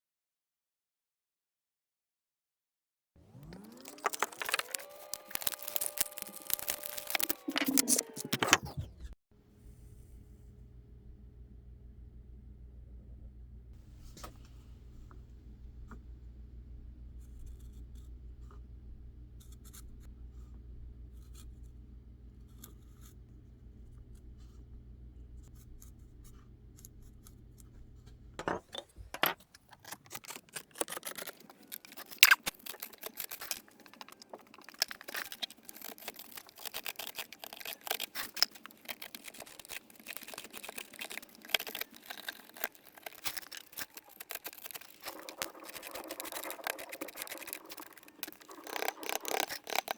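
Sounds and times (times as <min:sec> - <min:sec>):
low steady hum: 0:03.2 - 0:29.4
wood chips clicking: 0:03.4 - 0:08.6, 0:28.4 - 0:49.9
knife scraping wood: 0:03.9 - 0:08.9, 0:28.4 - 0:49.9.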